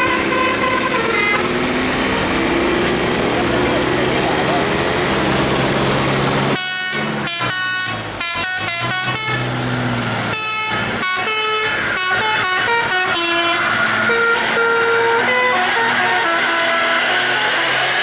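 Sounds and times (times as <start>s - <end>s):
musical air horn melody: 0.0s - 1.5s, 6.6s - 9.4s, 10.3s - 18.0s.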